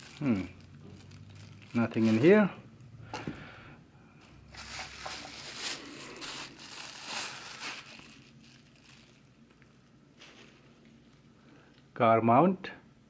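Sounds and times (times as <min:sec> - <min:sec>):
packaging crinkling and rustling: 0:00.0 - 0:02.5, 0:04.2 - 0:11.9.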